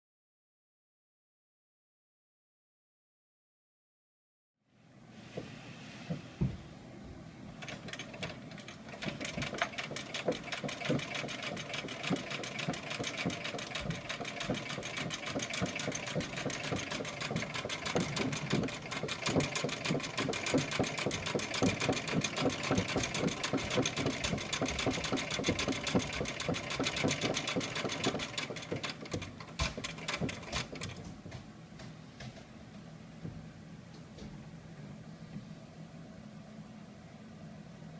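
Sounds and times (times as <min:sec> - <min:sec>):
sewing machine running: 0:07.6 - 0:31.0.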